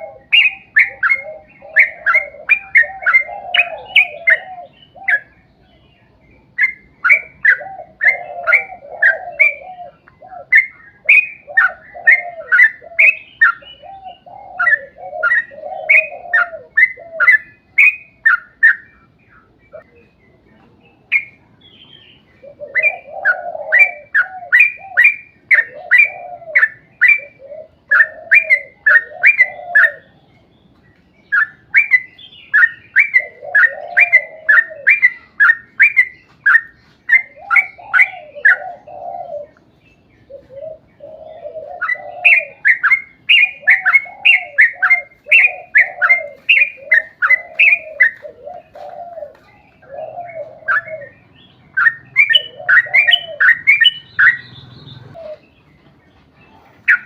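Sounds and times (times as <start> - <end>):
bird singing bubbly notes: 50.7 - 55.5.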